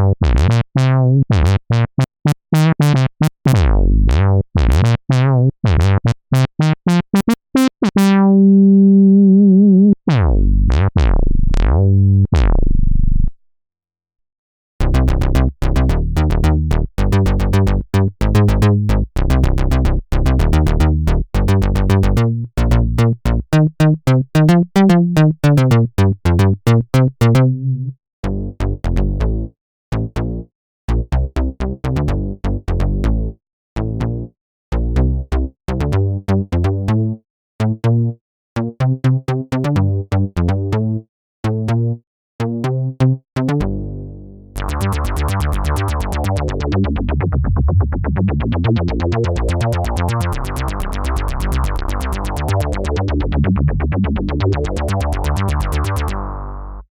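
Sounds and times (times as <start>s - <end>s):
synthesizer bass notes: 0.0s - 13.4s, 14.8s - 29.5s, 43.6s - 56.9s.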